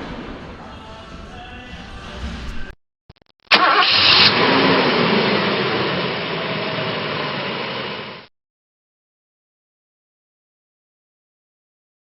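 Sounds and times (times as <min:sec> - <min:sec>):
engine running: 0:03.6 - 0:08.3.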